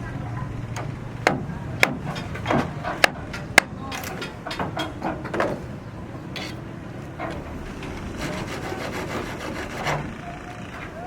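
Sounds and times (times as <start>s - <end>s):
rasping scraping strokes: 7.3s - 10.9s.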